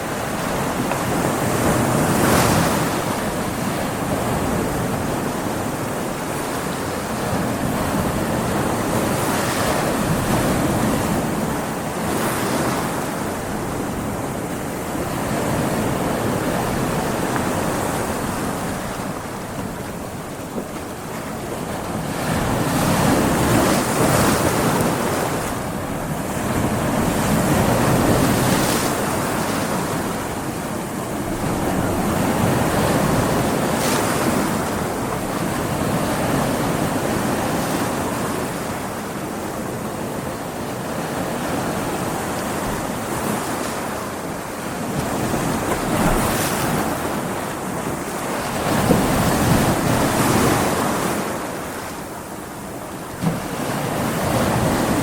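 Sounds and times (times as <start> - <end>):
ocean waves breaking on rocks: 0.0 - 55.0
wind on microphone: 41.2 - 52.3.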